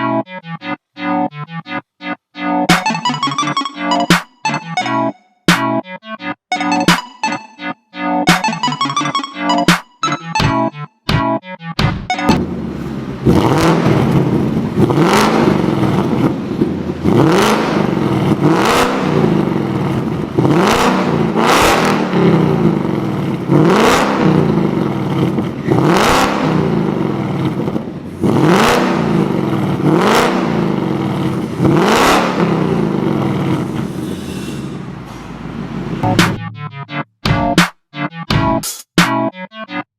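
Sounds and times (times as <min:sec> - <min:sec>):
car engine revving: 0:12.4 - 0:36.4.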